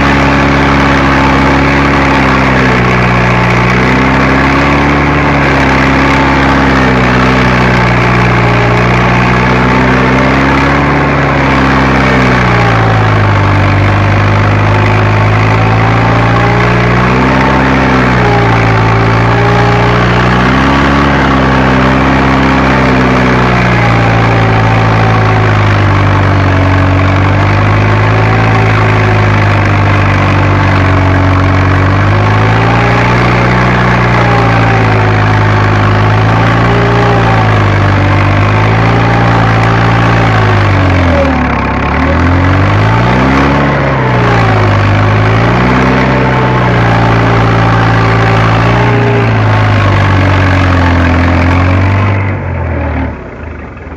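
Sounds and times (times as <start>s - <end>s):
tractor engine running under load: 0.0s - 53.9s.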